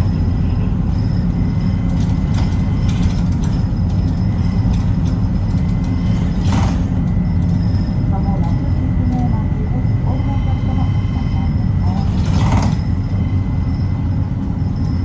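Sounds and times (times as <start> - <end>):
bus engine and road rumble: 0.0 - 15.0.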